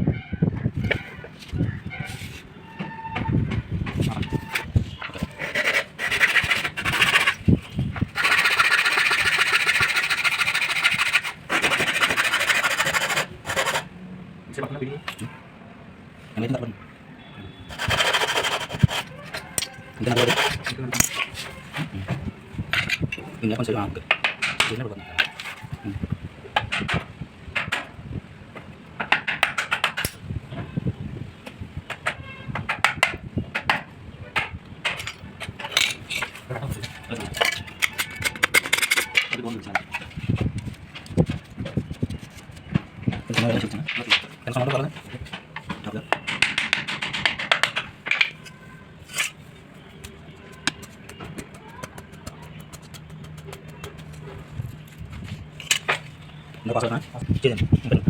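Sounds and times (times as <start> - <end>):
hard objects knocking and clinking: 37.2 - 40.1, 45.3 - 49.4, 50.0 - 54.3.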